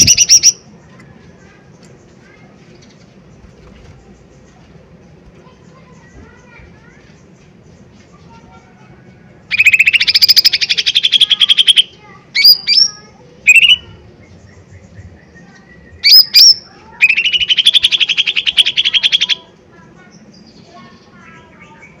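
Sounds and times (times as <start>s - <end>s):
bird singing trills and whistles: 0.0s - 0.7s, 9.5s - 19.5s.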